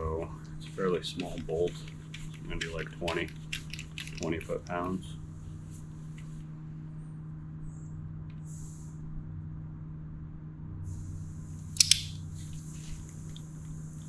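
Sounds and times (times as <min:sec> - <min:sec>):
steady low hum: 0:00.0 - 0:14.0
wrench metallic click: 0:11.8 - 0:12.2.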